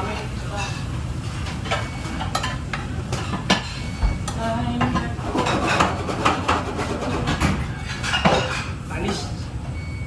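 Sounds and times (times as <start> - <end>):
low kitchen rumble: 0.0 - 10.0
plates and pans clinking: 4.8 - 8.8.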